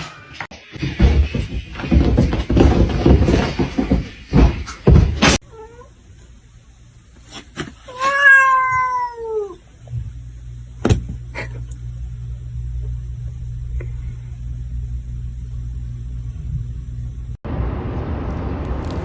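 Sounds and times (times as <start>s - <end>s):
bumps and scuffling: 0.4s - 5.4s
cat meowing: 7.9s - 9.6s.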